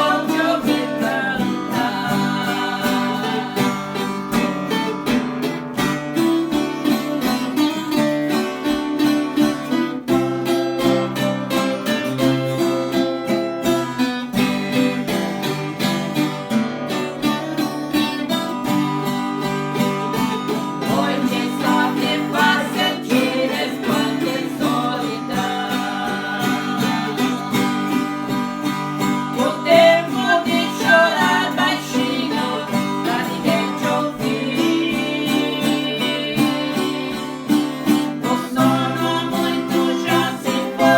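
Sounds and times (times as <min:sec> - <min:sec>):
voices singing a praise song: 0:00.0 - 0:04.5, 0:20.5 - 0:28.4, 0:29.0 - 0:40.9
acoustic guitar strumming chords: 0:00.0 - 0:40.9.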